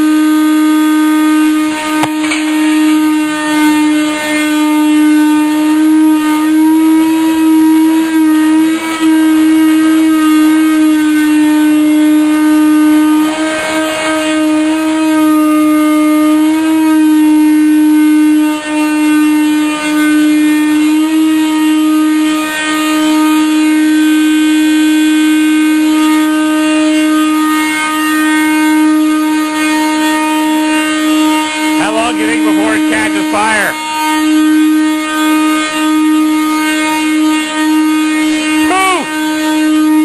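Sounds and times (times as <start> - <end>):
steady droning tone: 0.0 - 22.3, 31.0 - 40.0.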